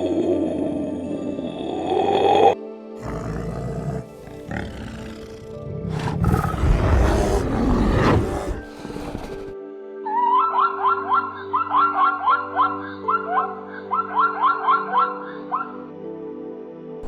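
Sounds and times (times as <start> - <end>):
big cat growling and roaring: 0.0 - 9.6
background music: 0.0 - 17.0.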